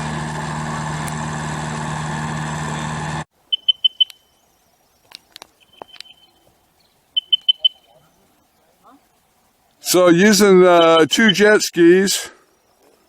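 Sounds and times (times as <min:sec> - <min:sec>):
engine humming: 0:00.0 - 0:09.9
bird chirping: 0:03.4 - 0:09.7, 0:10.7 - 0:11.6.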